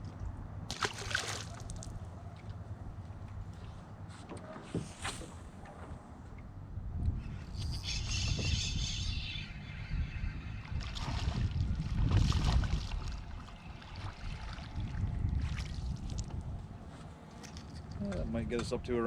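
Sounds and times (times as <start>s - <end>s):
water splashing against boat: 0.6s - 2.5s, 10.7s - 16.5s
wind buffeting microphone: 6.0s - 16.9s.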